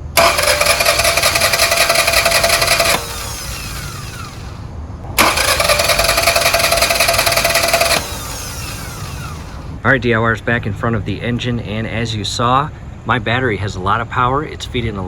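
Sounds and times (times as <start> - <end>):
engine cranking by starter: 0.0 - 9.8.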